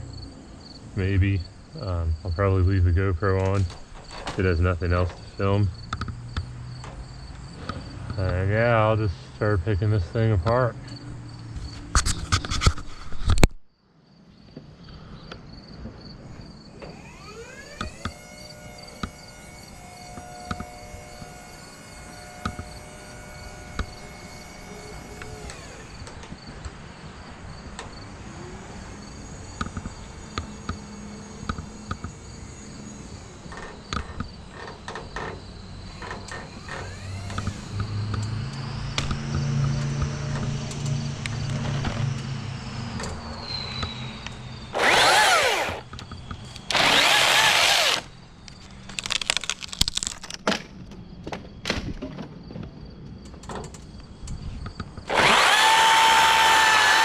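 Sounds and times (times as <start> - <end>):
crickets chirping: 0.0 - 57.0
hydraulic pump whining: 1.7 - 9.8, 16.7 - 26.4, 27.7 - 50.2, 55.0 - 57.0.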